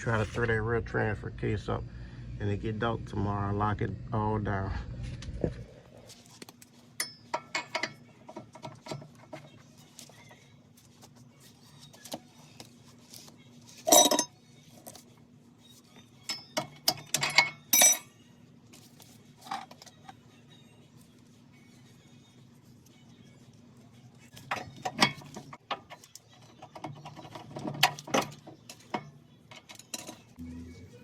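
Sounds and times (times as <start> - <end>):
faint steady hum: 0.0 - 6.2
metal tools clinking: 13.9 - 14.3.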